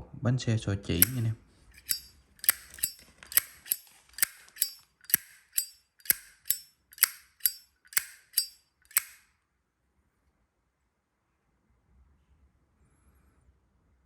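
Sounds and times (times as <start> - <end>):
lighter lid clicking open and shut: 1.0 - 9.2.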